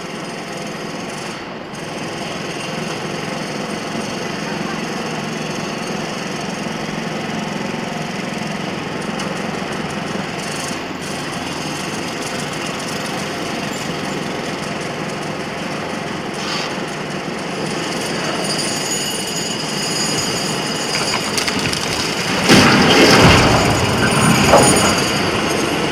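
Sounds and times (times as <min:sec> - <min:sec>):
factory machinery clattering: 0:08.7 - 0:16.2, 0:16.8 - 0:25.9.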